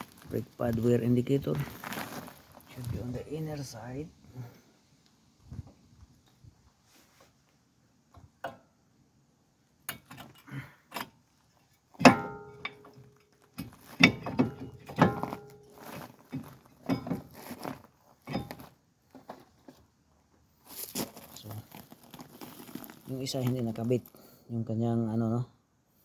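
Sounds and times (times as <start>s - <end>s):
metal brake parts clinking: 9.9s - 17.4s.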